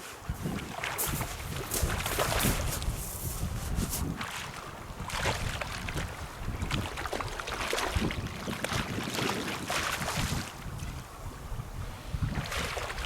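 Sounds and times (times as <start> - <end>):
wind buffeting microphone: 0.2 - 13.0
water washing and splashing: 0.4 - 6.1.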